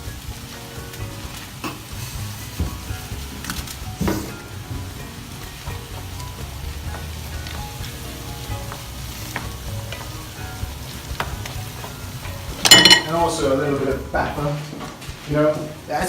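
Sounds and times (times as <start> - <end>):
food sizzling in a frying pan: 0.0 - 16.0.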